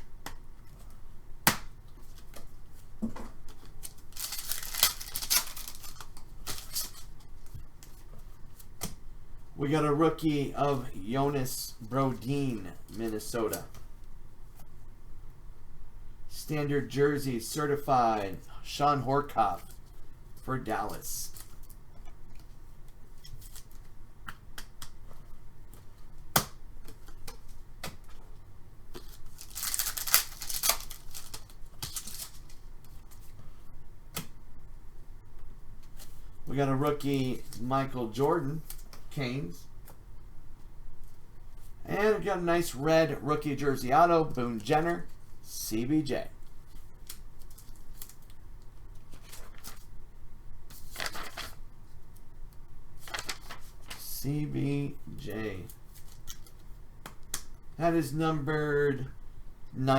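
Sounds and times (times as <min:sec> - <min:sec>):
packs tearing with crinkling: 0:03.7 - 0:07.1, 0:29.0 - 0:32.6
card packs clicking and tapping: 0:03.8 - 0:06.9, 0:29.0 - 0:32.3.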